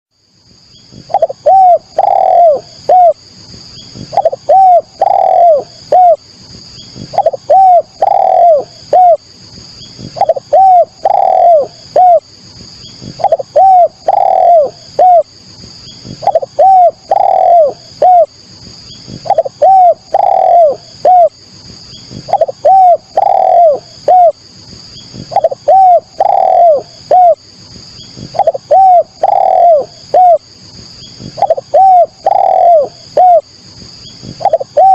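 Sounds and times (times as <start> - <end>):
faint high-pitched hiss: 0.1 - 34.9
dove cooing: 1.0 - 3.2, 4.0 - 6.2, 7.0 - 9.2, 10.0 - 12.3, 13.0 - 15.3, 16.0 - 18.3, 19.1 - 21.4, 22.1 - 24.4, 25.2 - 27.4, 28.2 - 30.4, 31.2 - 33.5, 34.2 - 34.9.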